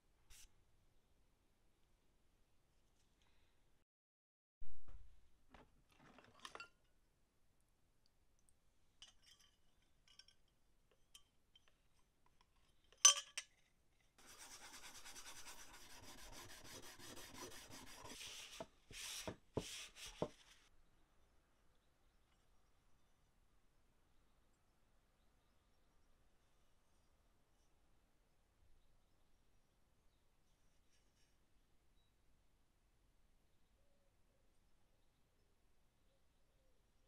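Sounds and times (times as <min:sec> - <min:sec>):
sharp metallic clink: 0:13.0 - 0:13.5.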